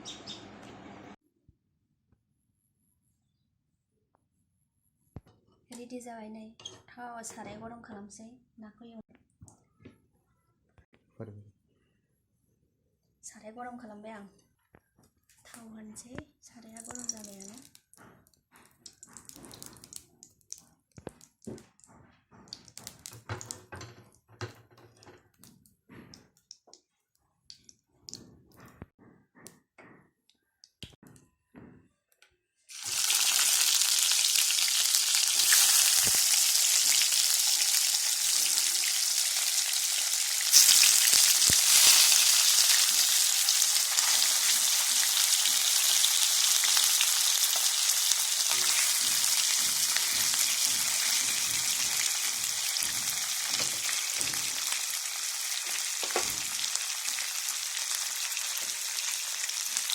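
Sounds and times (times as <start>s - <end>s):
fish sizzling in hot oil: 16.8s - 17.7s, 32.7s - 59.9s.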